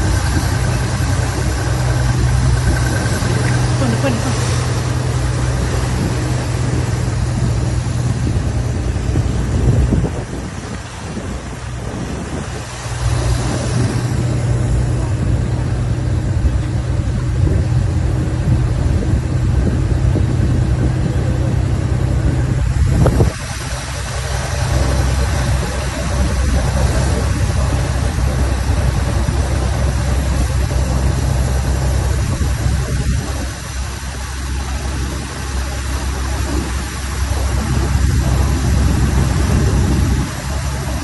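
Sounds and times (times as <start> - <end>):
engine humming: 0.0 - 41.0.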